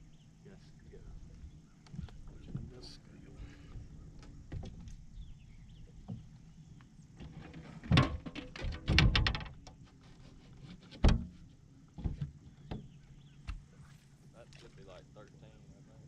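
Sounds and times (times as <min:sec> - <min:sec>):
knocks and thumps on boat: 0:07.2 - 0:09.8, 0:10.6 - 0:13.7.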